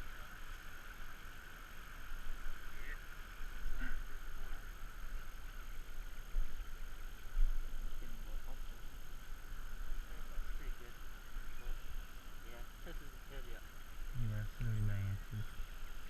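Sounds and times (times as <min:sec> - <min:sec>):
stream water rushing: 0:00.0 - 0:14.2
low rumbling on microphone: 0:14.0 - 0:16.0.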